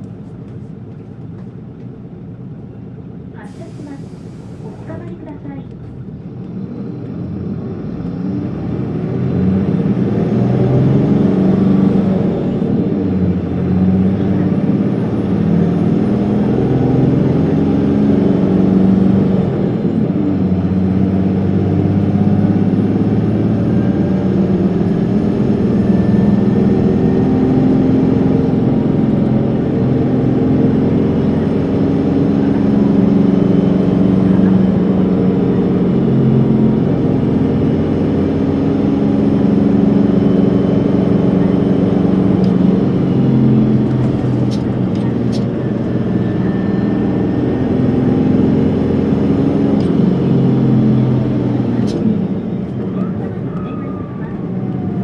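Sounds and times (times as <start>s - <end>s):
bus diesel engine accelerating: 0.0s - 55.0s.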